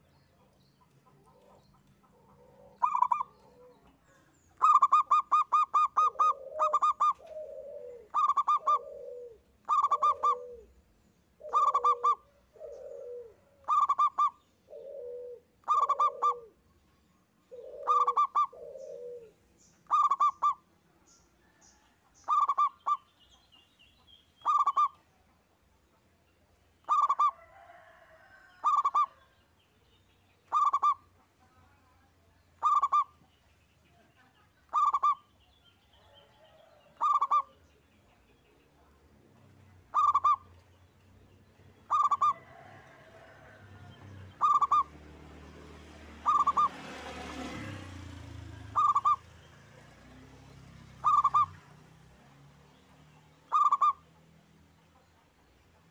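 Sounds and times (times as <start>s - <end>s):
dove cooing: 1.1s - 16.6s, 17.4s - 20.6s, 22.2s - 23.1s, 24.4s - 25.0s, 26.8s - 29.4s, 30.5s - 31.2s, 32.6s - 33.2s, 34.7s - 35.3s, 35.9s - 37.6s, 39.8s - 40.6s, 41.8s - 44.9s, 46.1s - 49.3s, 51.0s - 51.7s, 53.5s - 54.1s.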